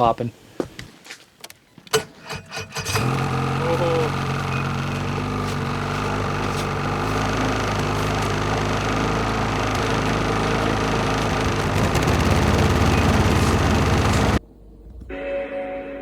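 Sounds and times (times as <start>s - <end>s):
engine running: 2.2s - 14.4s.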